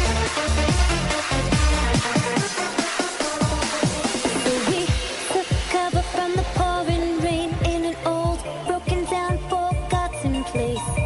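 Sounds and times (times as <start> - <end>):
electronic dance music: 0.0 - 11.0
deep kick drums: 4.9 - 10.2.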